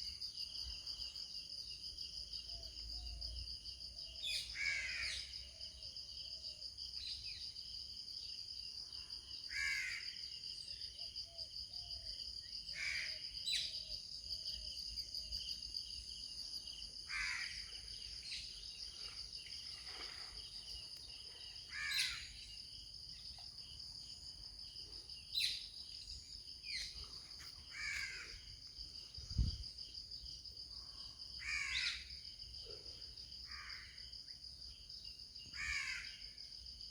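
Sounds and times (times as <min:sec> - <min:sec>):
crows cawing: 0:04.6 - 0:05.2, 0:09.5 - 0:10.0, 0:17.1 - 0:17.6, 0:21.7 - 0:22.2, 0:27.7 - 0:28.4, 0:31.4 - 0:32.0, 0:35.6 - 0:36.2.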